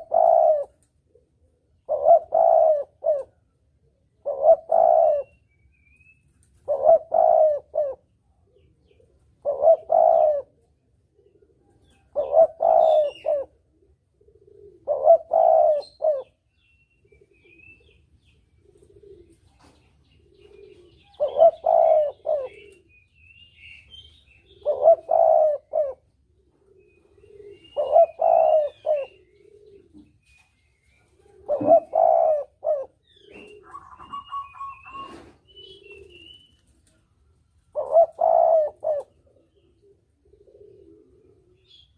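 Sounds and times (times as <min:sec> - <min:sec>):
faint low coos: 0:00.0 - 0:05.4, 0:06.6 - 0:16.4, 0:17.0 - 0:23.0, 0:24.5 - 0:30.2, 0:31.1 - 0:41.9
dove cooing: 0:00.0 - 0:05.5, 0:06.5 - 0:41.9
small birds chirping: 0:15.4 - 0:25.4, 0:26.1 - 0:37.1, 0:39.0 - 0:41.9.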